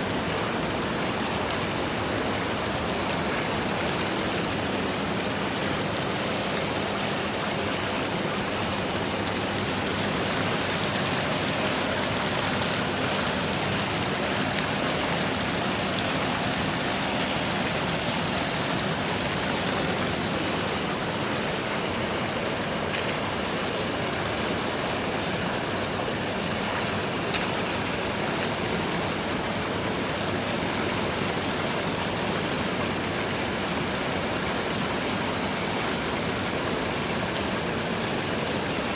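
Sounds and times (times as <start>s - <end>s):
flowing water rushing: 0.0s - 38.9s.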